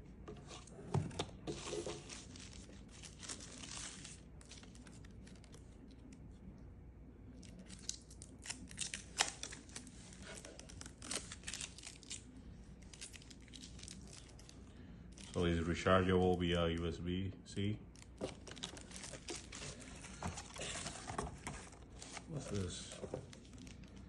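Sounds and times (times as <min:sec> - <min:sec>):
packaging crinkling and tearing: 0:01.5 - 0:06.2, 0:07.4 - 0:16.8, 0:17.9 - 0:24.0.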